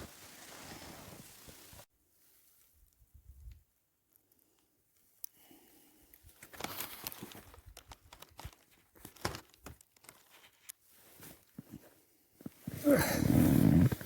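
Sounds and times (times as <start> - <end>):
rustling and crinkling: 6.3 - 14.0.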